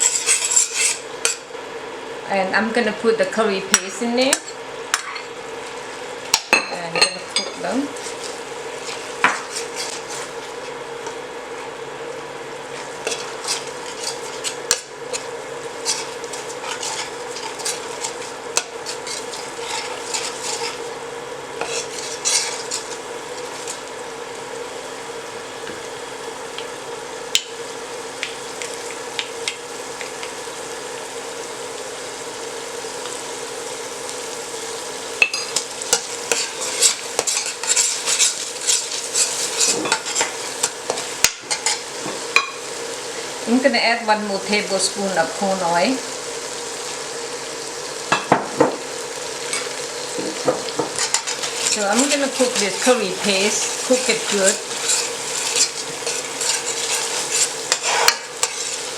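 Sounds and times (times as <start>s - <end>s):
utensil scraping a pan: 0.0s - 1.4s, 7.4s - 11.7s, 12.7s - 21.0s, 21.6s - 23.8s, 35.3s - 42.2s, 49.5s - 58.9s
curry paste sizzling in oil: 0.0s - 2.0s, 3.7s - 58.9s.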